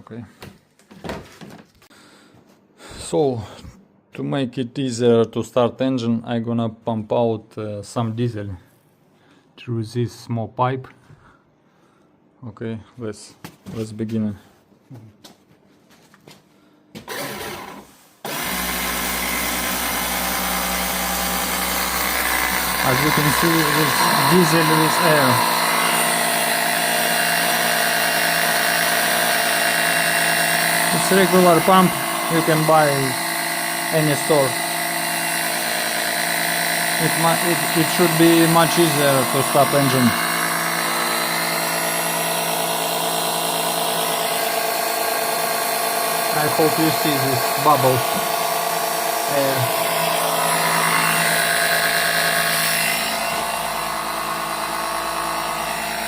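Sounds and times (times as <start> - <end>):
electric pump humming: 17.0 - 56.0.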